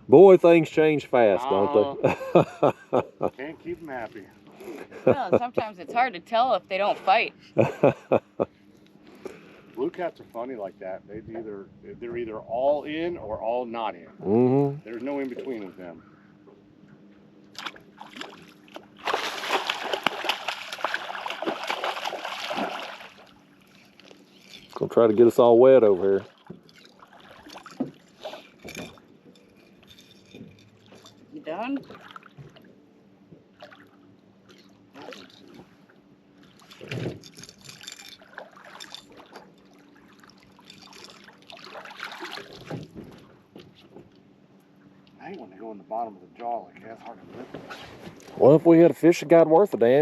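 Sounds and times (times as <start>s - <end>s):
fish thrashing and splashing water: 17.6s - 24.8s, 26.2s - 29.1s, 31.8s - 32.7s, 33.5s - 35.6s, 36.4s - 43.0s
handling noises on a boat: 20.4s - 45.5s, 46.4s - 48.8s
knocks and rustles: 42.5s - 44.2s.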